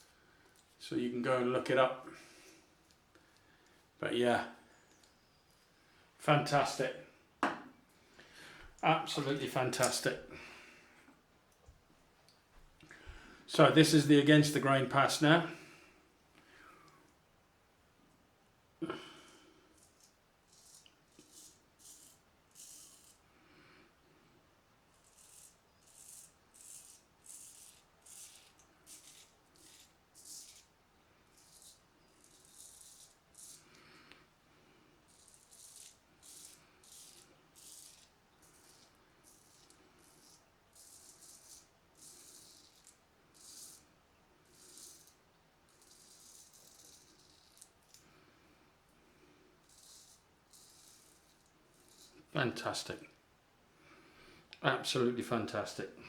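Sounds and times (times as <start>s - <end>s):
razor scraping through stubble: 19.7s - 23.2s, 24.9s - 33.8s, 35.1s - 48.0s, 49.6s - 52.3s
small ticks: 24.9s - 30.7s, 31.3s - 34.2s, 35.1s - 48.1s, 49.6s - 52.2s.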